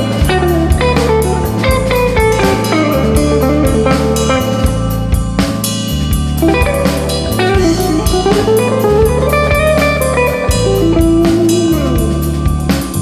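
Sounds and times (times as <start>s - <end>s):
blues-rock band playing: 0.0s - 13.0s
lead guitar with bent notes: 0.0s - 13.0s.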